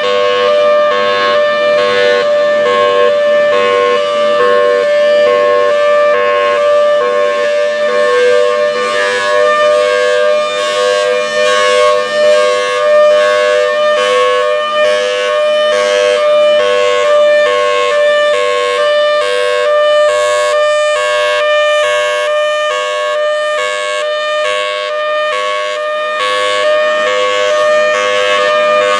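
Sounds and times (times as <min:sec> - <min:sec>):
two-tone warning siren: 0:00.0 - 0:28.9.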